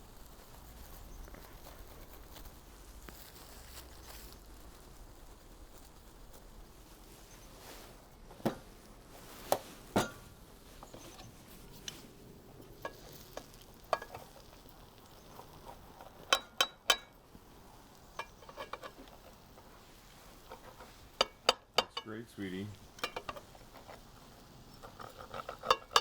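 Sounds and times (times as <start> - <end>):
utensils clinking against dishes: 20.6 - 22.2, 24.8 - 26.0.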